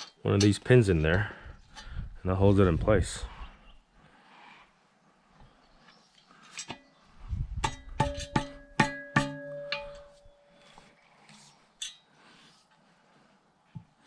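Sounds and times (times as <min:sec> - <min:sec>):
sharp metal knocks ringing: 0:07.6 - 0:10.5.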